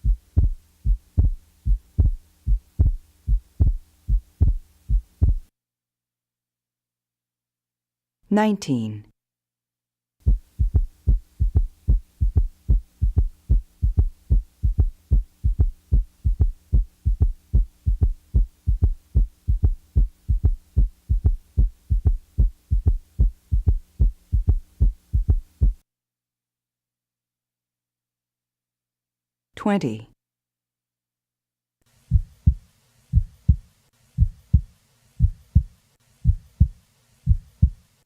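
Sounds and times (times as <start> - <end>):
faint steady hum: 0.0 - 5.5, 10.2 - 25.8, 31.9 - 38.0
heartbeat thuds through stethoscope: 0.0 - 5.5, 10.2 - 25.8, 32.1 - 37.8.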